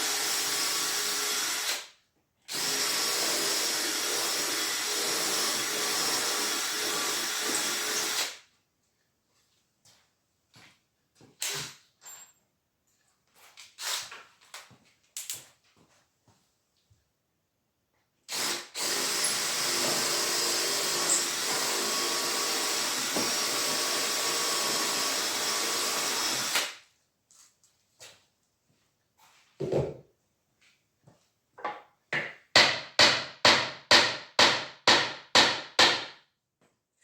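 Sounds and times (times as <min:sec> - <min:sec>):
power drill running: 0:00.0 - 0:01.9, 0:02.5 - 0:08.4, 0:18.3 - 0:26.8.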